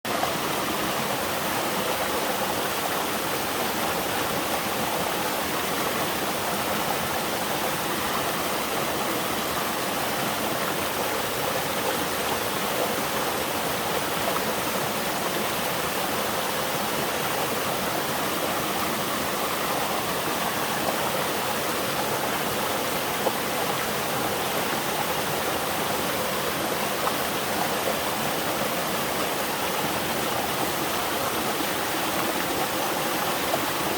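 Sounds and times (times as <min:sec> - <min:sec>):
waterfall pouring and splashing: 0:00.1 - 0:33.9.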